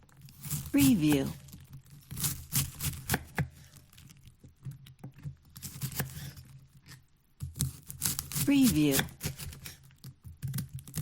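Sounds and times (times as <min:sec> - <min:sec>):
knife slicing cabbage on board: 0:02.1 - 0:03.6, 0:05.6 - 0:06.4, 0:07.5 - 0:11.0.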